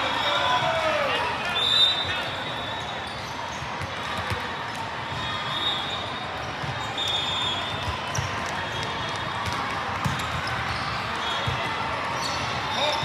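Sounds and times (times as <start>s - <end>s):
hubbub of sports hall: 0.0s - 13.0s
balls bouncing on gym floor: 3.8s - 4.5s, 9.4s - 10.5s.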